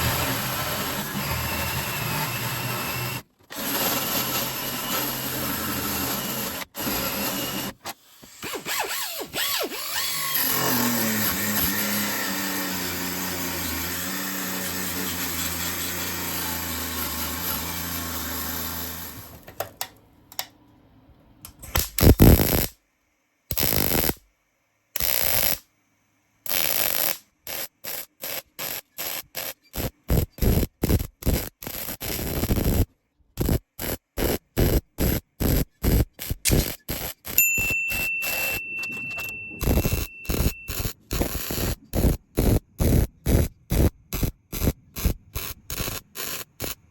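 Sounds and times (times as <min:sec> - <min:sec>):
welder crackling in bursts: 0:21.7 - 0:22.8, 0:23.5 - 0:24.2, 0:25.0 - 0:25.6, 0:26.5 - 0:37.4, 0:39.7 - 0:46.9
angle grinder with wire wheel: 0:37.3 - 0:41.0.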